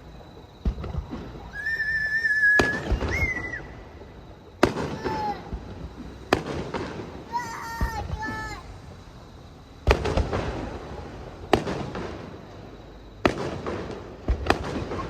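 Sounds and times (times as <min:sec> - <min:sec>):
fireworks bursting with booms: 0:00.0 - 0:15.0.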